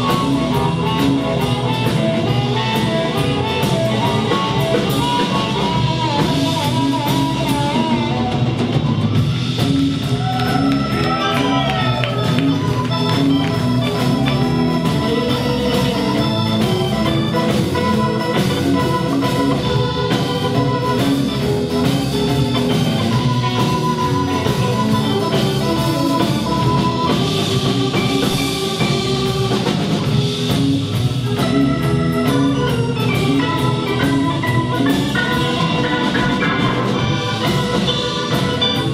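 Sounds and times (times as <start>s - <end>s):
drum kit: 0.0s - 38.9s
guitar: 0.0s - 38.9s
organ: 0.0s - 38.9s.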